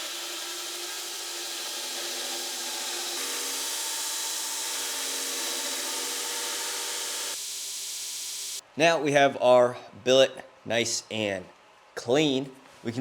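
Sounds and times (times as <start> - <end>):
power grinder grinding steel: 0.0 - 8.6.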